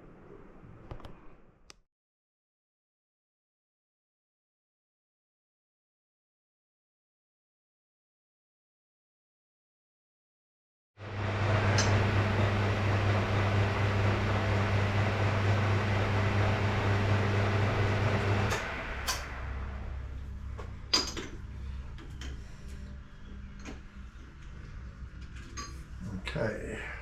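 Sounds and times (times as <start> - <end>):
machine humming and hissing: 11.0 - 26.0.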